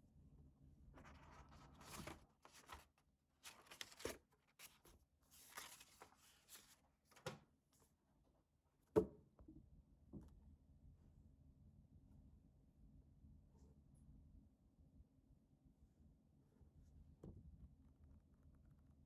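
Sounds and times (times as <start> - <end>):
paper and packaging rustling: 1.1 - 7.4.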